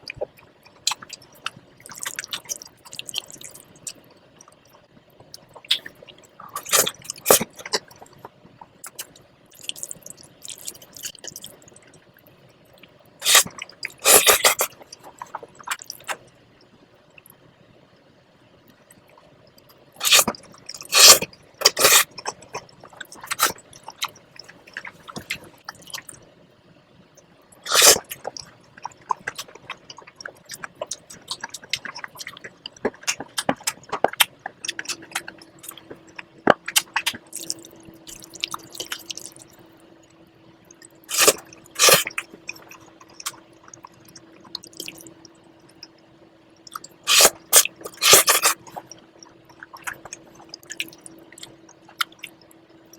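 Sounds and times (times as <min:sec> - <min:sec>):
wet chewing of pasta: 0:00.0 - 0:12.0, 0:12.7 - 0:16.2, 0:18.7 - 0:26.2, 0:27.5 - 0:39.8, 0:40.6 - 0:46.0, 0:46.6 - 0:52.7.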